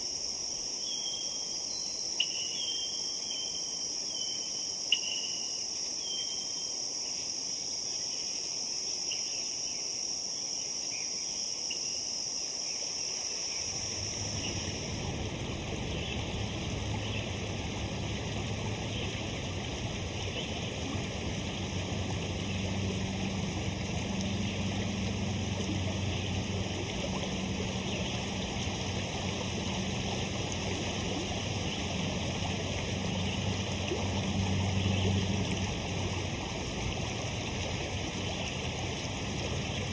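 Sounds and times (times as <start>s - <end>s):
insects trilling: 0.0s - 39.9s
low steady hum: 13.4s - 39.9s
water rushing: 13.6s - 39.9s.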